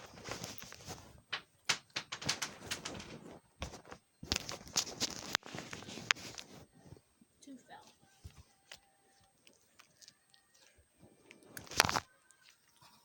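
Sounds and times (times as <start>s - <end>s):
wet slime squishing: 8.5s - 13.0s.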